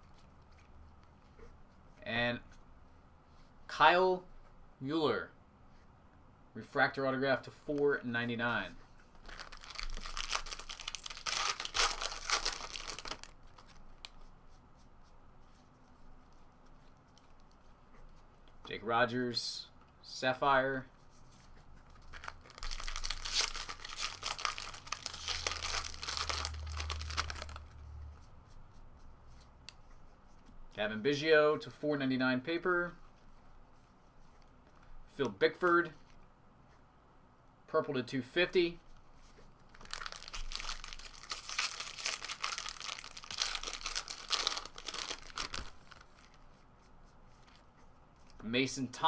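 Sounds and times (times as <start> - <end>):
wrapper tearing and crinkling: 9.2 - 14.1, 22.0 - 27.8, 39.7 - 46.4.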